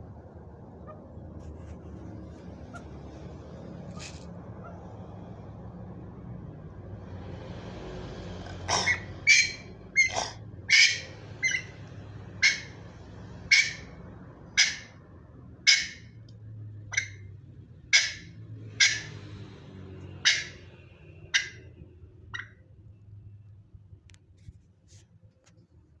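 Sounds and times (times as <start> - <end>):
pet imitating coughs: 8.4 - 9.3, 10.0 - 10.6.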